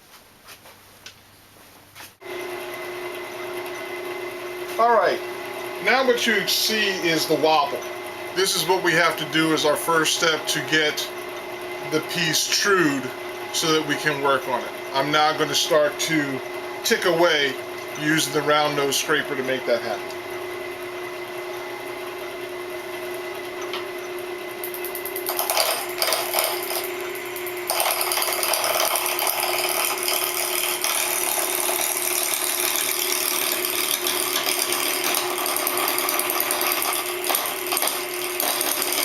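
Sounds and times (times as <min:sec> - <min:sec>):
wood lathe running: 0:02.2 - 0:39.0
scraper cutting spinning wood: 0:25.2 - 0:39.0.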